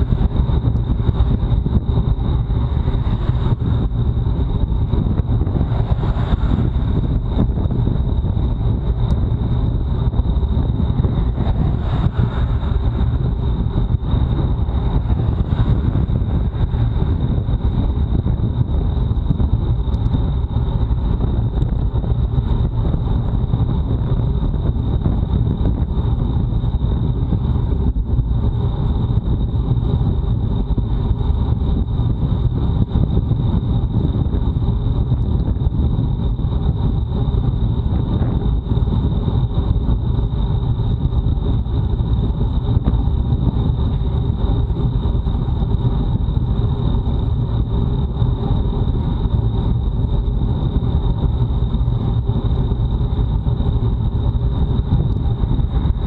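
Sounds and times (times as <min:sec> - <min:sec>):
wind rumbling over microphone: 0:00.0 - 0:56.0.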